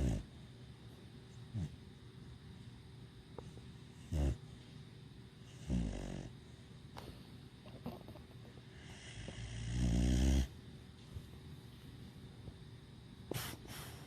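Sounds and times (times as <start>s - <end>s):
dog snoring: 0.0s - 0.4s, 1.5s - 1.8s, 3.9s - 4.5s, 5.4s - 6.4s, 8.7s - 10.6s.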